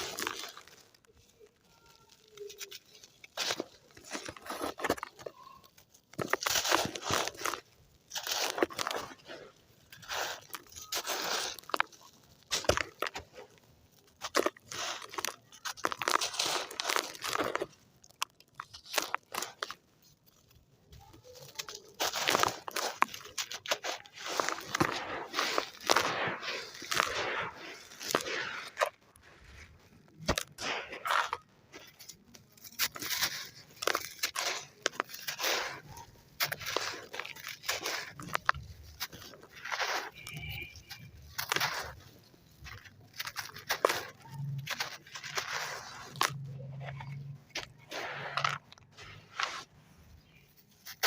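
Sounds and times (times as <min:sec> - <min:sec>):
gritty sand crunching in water: 0:00.0 - 0:20.6, 0:21.4 - 0:51.0
sharp crack: 0:21.5 - 0:46.6.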